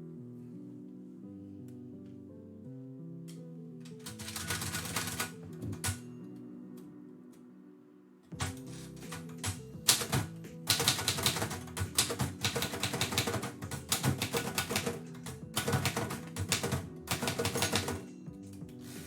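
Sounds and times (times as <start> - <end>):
quiet background music: 0.0 - 19.0
typewriter keystrokes clacking: 4.0 - 6.0, 8.4 - 18.1.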